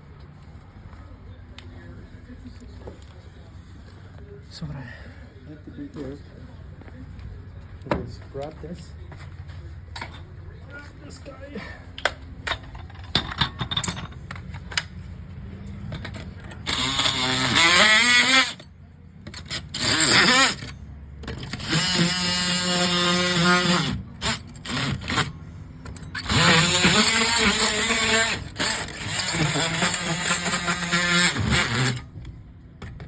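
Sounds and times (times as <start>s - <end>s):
power tool motor running: 16.5s - 18.6s, 19.3s - 20.7s, 21.3s - 32.1s.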